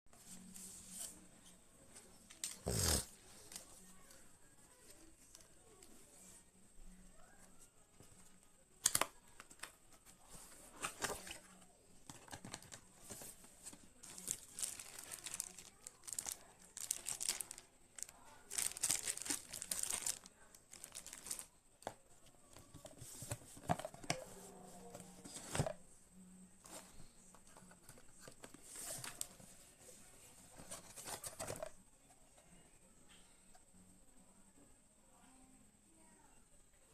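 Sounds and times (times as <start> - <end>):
packaging rustling and tearing: 14.0 - 21.5.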